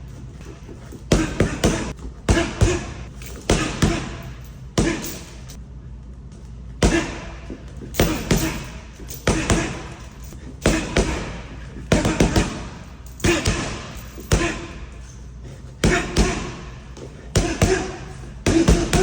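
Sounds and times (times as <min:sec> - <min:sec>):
boxing punches landing: 0:01.0 - 0:05.4, 0:06.8 - 0:14.9, 0:15.8 - 0:19.0.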